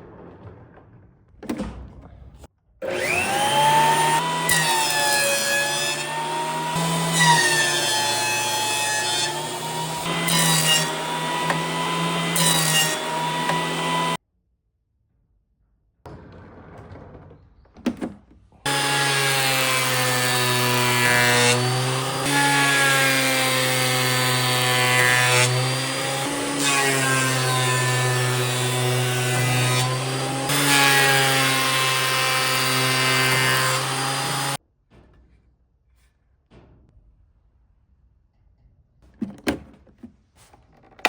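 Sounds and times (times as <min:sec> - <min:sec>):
woodworking machine cutting wood: 0:02.8 - 0:14.2, 0:18.7 - 0:34.6.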